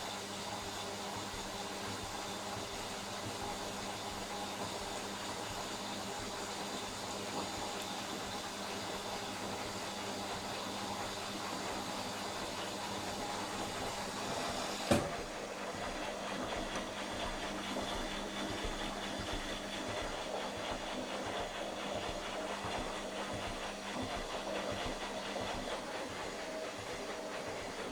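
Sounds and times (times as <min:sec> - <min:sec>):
washing machine spinning: 0:00.0 - 0:27.9.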